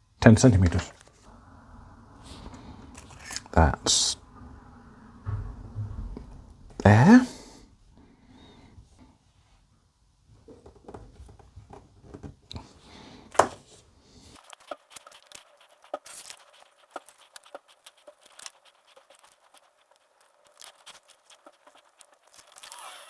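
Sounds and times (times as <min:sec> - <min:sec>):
hands handling plastic model parts: 0:03.0 - 0:03.6, 0:14.4 - 0:23.0.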